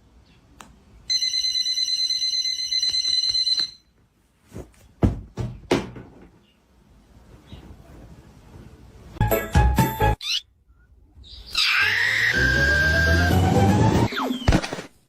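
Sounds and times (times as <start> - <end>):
knocks and thumps: 4.6 - 6.4.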